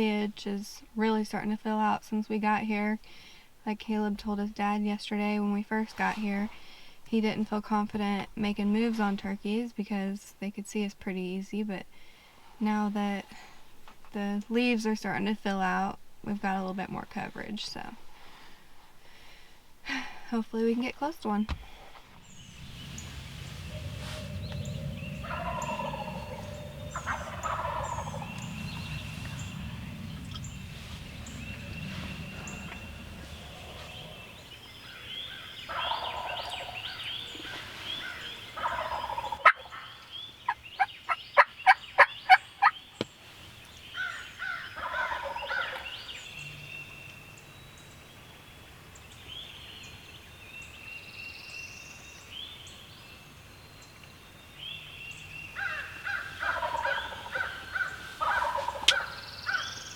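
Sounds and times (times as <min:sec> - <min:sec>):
birds chirping faintly: 0:20.3 - 0:59.9
low rumble: 0:21.6 - 0:36.8
turkey gobbling: 0:22.8 - 0:42.8, 0:44.5 - 0:45.8, 0:55.6 - 0:59.8.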